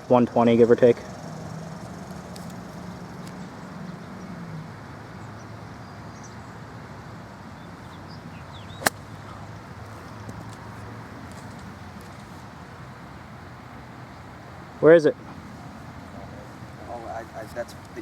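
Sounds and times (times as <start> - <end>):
low outdoor hum: 0.0 - 18.0
golf club striking ball: 8.8 - 9.4.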